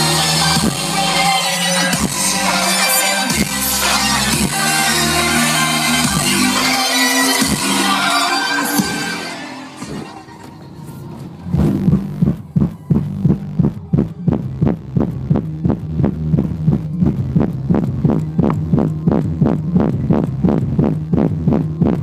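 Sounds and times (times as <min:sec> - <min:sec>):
deep bass pulses from subwoofer: 0:00.0 - 0:01.3, 0:01.9 - 0:02.7, 0:03.3 - 0:06.8, 0:10.7 - 0:22.0.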